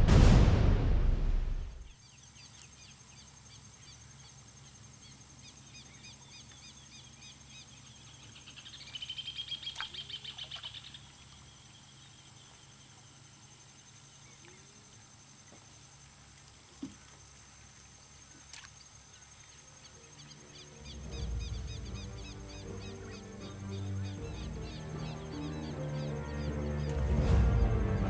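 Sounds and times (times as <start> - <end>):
opening music: 0.0 - 1.8, 20.4 - 28.0
bird chirps: 5.7 - 12.4, 19.4 - 27.6
bird trill: 19.8 - 27.9.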